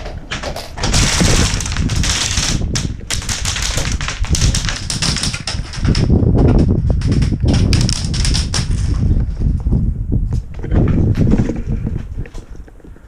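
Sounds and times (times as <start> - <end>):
rustling: 0.0 - 9.7.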